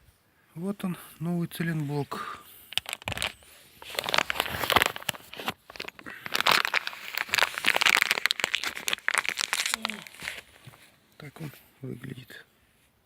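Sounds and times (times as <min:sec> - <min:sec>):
plastic packaging crinkling: 0:02.7 - 0:10.9.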